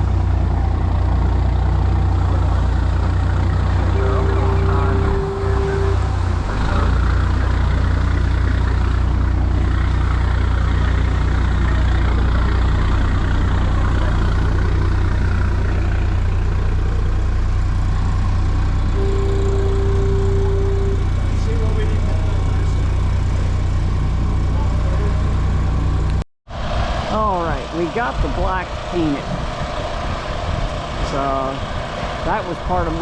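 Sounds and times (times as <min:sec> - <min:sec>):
generator engine humming: 0:00.0 - 0:26.2
fog siren steady tone: 0:00.4 - 0:09.0, 0:18.9 - 0:21.6.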